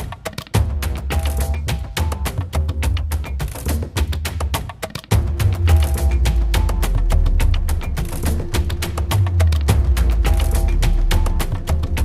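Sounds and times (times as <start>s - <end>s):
sharp clicky percussion: 0.0s - 12.0s
heavy bass line: 5.2s - 12.0s.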